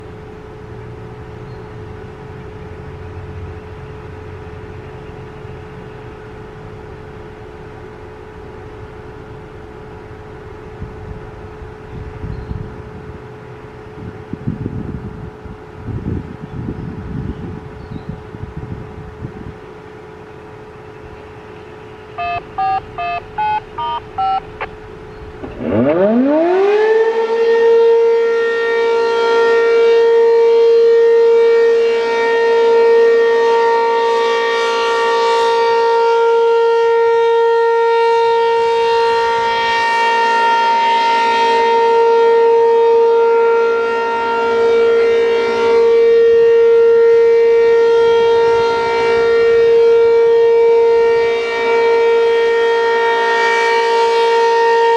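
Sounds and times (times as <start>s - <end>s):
outdoor warning siren: 19.1s - 54.9s
two-tone beeps over radio scanner: 22.2s - 24.7s.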